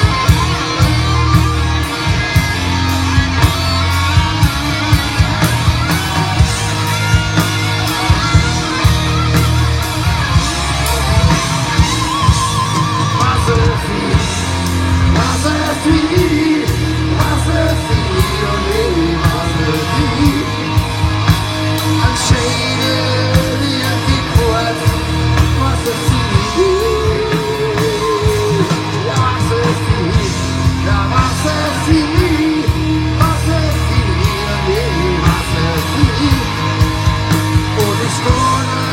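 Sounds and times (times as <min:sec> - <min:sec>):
rock band playing: 0:00.0 - 0:38.9
voices singing and shouting: 0:00.0 - 0:38.9.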